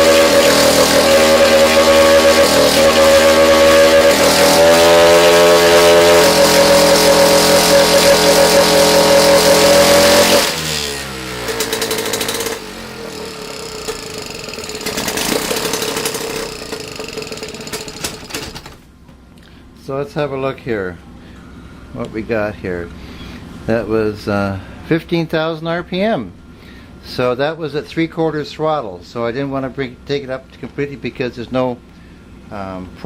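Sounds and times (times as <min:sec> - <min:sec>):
outboard motor running: 0:00.0 - 0:18.8.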